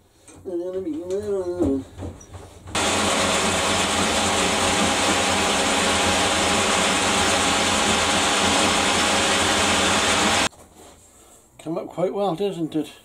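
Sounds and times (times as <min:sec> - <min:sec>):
electric power tool hissing: 0:02.8 - 0:10.5.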